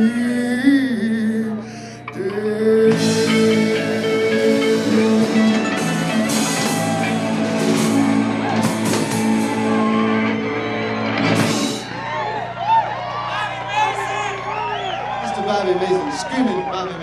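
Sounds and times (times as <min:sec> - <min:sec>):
live band playing: 0:02.4 - 0:12.5.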